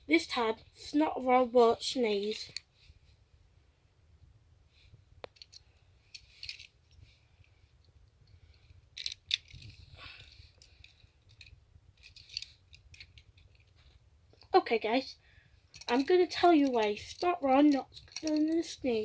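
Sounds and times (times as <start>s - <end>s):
toy cars clicking and rattling: 5.3s - 7.0s, 8.6s - 13.8s, 15.7s - 19.0s.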